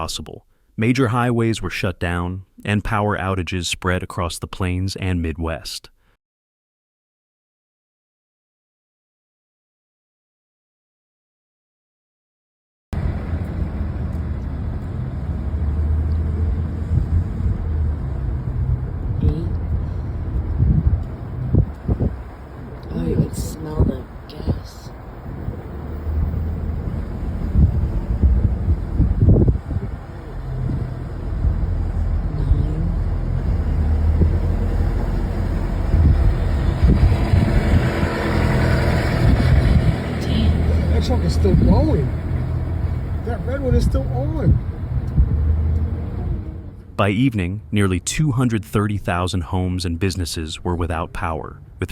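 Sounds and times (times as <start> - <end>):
motor vehicle rumbling: 13.0 - 51.9.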